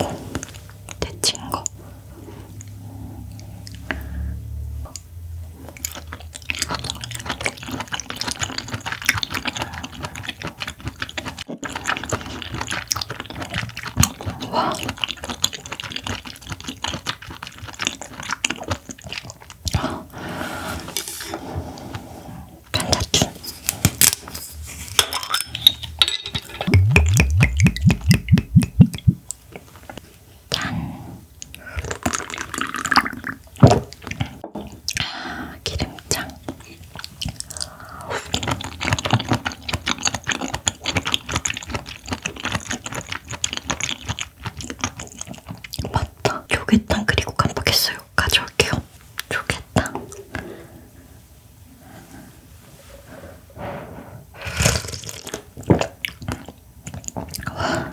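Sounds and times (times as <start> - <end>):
wet chewing clicks and smacks: 5.7 - 19.8, 26.7 - 30.7, 31.4 - 50.4, 55.0 - 57.8.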